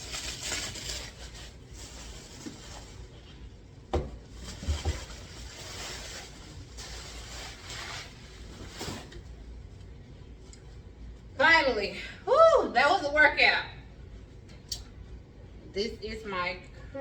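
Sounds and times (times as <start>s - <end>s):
packaging rubbing and scraping: 0.0s - 3.2s, 4.3s - 9.2s.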